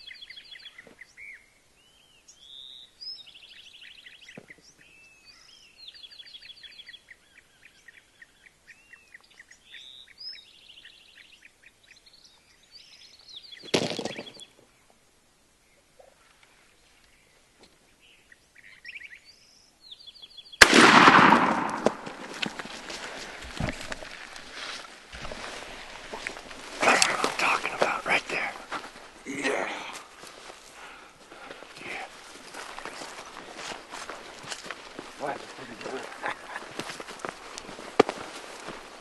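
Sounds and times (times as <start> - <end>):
small birds chirping: 0.0 - 15.0, 15.6 - 20.6, 22.5 - 39.0
loud gunshot: 20.6 - 22.3.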